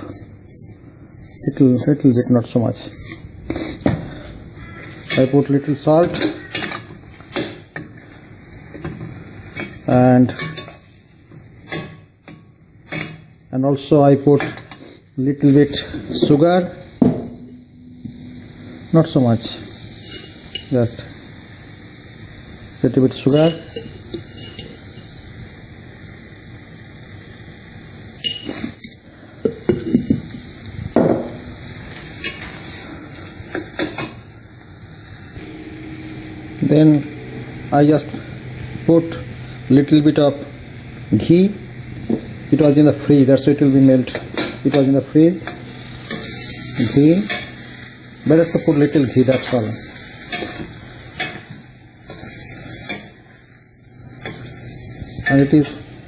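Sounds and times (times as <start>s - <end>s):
utensil scraping pot: 0.0s - 10.8s
curry sizzling: 0.0s - 56.0s
spoon scraping and clinking pot: 20.0s - 20.7s, 23.3s - 24.8s, 28.2s - 28.8s.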